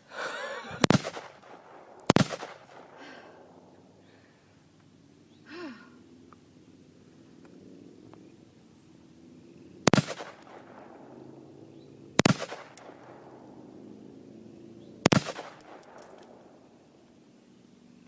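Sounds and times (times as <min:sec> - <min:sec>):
gunshots with ringing echo: 0:00.7 - 0:04.0, 0:09.8 - 0:17.0.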